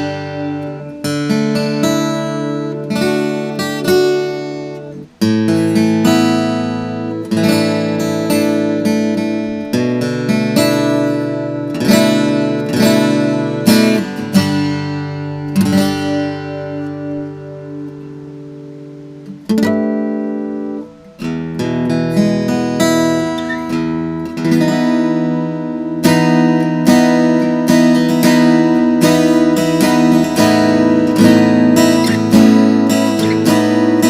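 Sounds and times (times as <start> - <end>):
acoustic guitar chords: 0.0 - 34.0.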